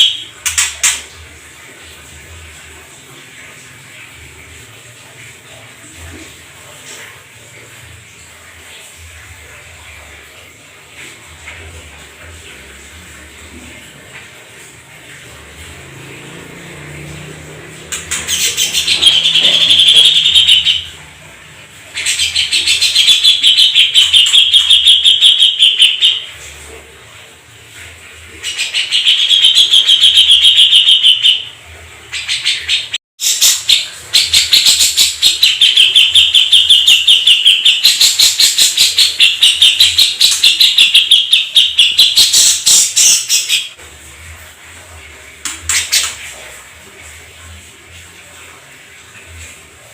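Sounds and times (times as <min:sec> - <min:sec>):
canary singing rolling trills: 0:15.2 - 0:26.4, 0:28.3 - 0:43.8.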